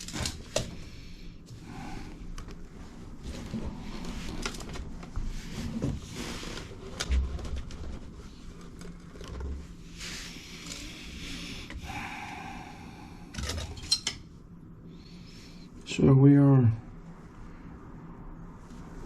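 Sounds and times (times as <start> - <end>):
rubbing and scraping handling noises: 2.4 - 11.8.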